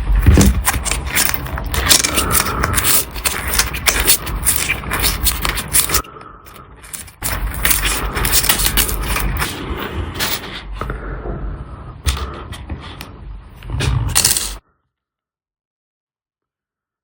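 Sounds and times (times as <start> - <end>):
metal tools scraping watch parts: 0.0 - 6.0, 6.8 - 9.6, 10.2 - 10.4, 13.8 - 14.6.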